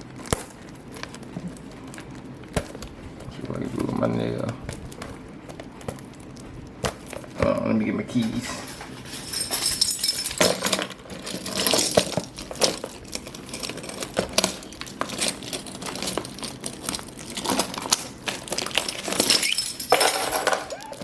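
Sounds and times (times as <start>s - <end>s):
keys jingling: 8.2s - 17.8s, 18.7s - 21.0s
plastic wrap crinkling: 11.0s - 19.9s.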